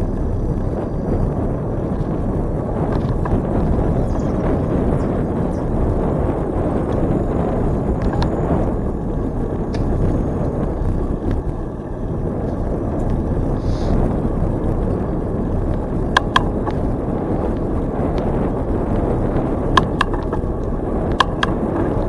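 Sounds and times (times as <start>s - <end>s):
bicycle tyre noise: 0.0s - 22.0s
wind on microphone: 0.0s - 22.0s
sharp clicks: 16.1s - 16.8s, 19.7s - 20.4s, 21.1s - 21.9s.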